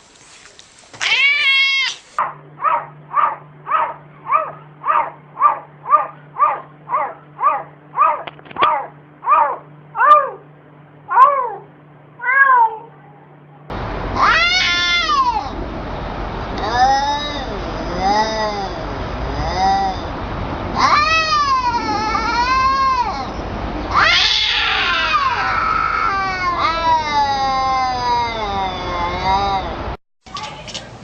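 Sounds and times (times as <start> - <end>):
cat meowing: 1.0 - 2.1, 12.2 - 13.2, 14.2 - 15.5, 20.8 - 29.7.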